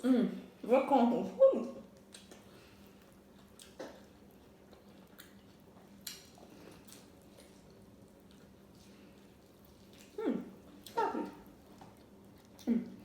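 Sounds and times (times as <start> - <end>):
low steady hum: 0.0 - 13.0
wet mouth clicks chewing: 2.0 - 2.5.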